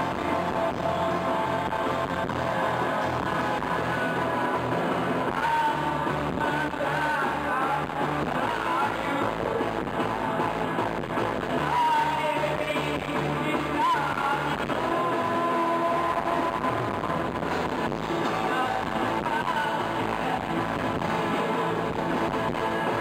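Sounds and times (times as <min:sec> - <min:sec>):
live guitar band music: 0:00.0 - 0:23.0
person singing and calling out: 0:05.2 - 0:10.6, 0:11.4 - 0:23.0.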